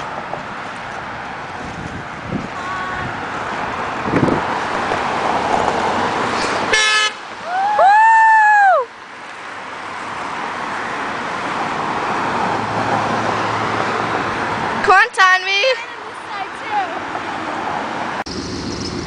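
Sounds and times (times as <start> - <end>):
passing traffic: 0.0 - 19.0
car horn toot: 6.7 - 7.2.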